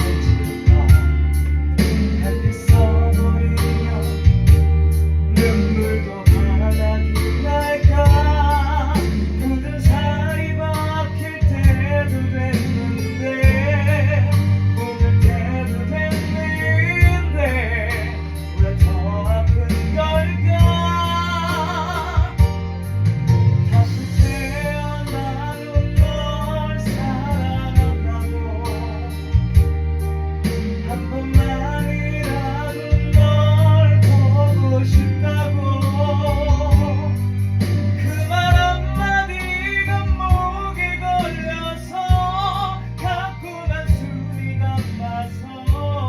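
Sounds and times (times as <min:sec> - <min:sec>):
karaoke backing track: 0:00.0 - 0:46.0
person singing ballad: 0:00.0 - 0:46.0.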